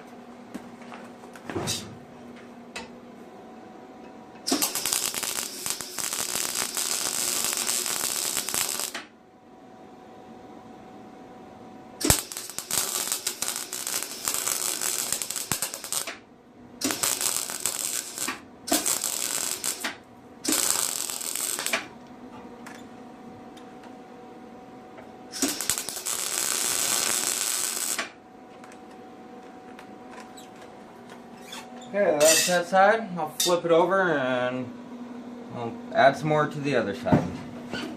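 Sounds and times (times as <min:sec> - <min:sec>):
arc welder crackling sizzle: 0:04.3 - 0:09.2, 0:11.9 - 0:22.9, 0:24.9 - 0:33.0.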